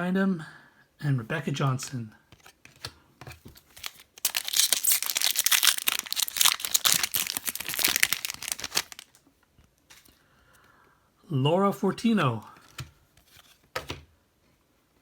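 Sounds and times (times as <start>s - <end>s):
foil wrapper tearing and crinkling: 3.6s - 9.2s.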